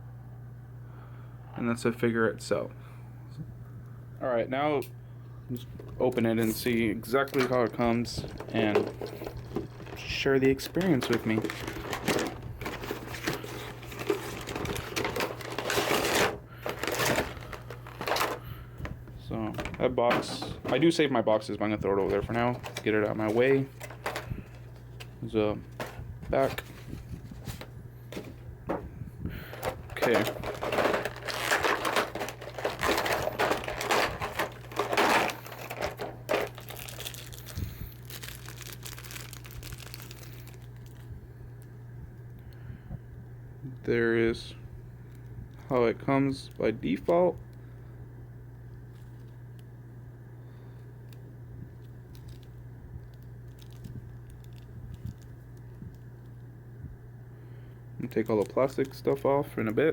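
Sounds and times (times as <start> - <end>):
low steady hum: 0.0 - 59.9
plastic packaging crinkling: 5.6 - 21.1, 21.8 - 41.2, 48.8 - 49.6, 50.5 - 56.5, 58.0 - 59.9
cardboard and plastic rustling: 5.6 - 41.2, 51.0 - 56.4, 58.0 - 59.9.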